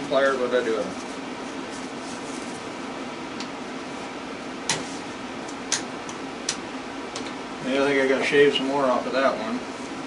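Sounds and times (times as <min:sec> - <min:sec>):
steady background hum: 0:00.0 - 0:10.0.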